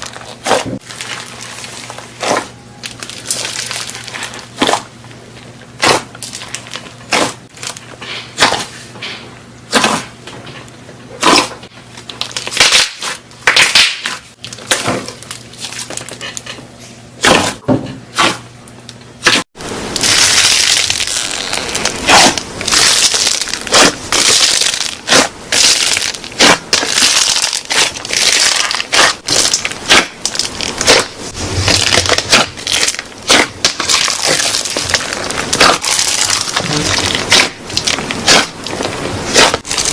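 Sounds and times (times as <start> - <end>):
crunchy slime crackling: 0.0 - 8.8, 19.9 - 39.9.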